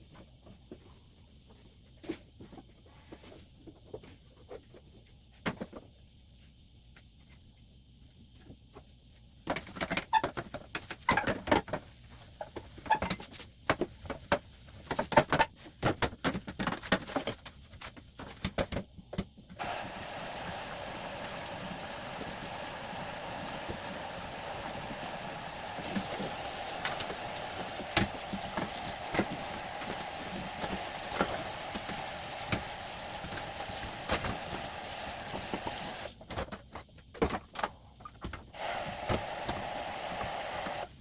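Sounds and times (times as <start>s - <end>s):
tap water running: 19.6s - 36.2s, 38.6s - 41.0s.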